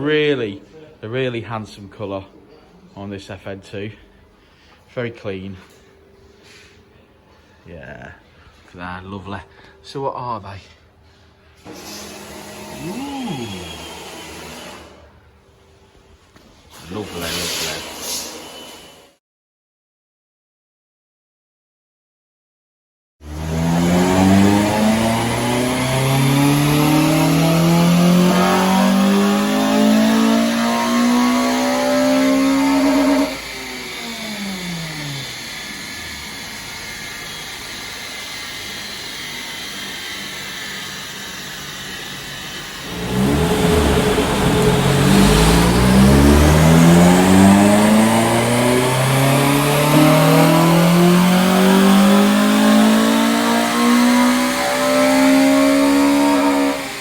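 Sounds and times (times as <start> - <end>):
car engine full-throttle revving: 23.2 - 57.0.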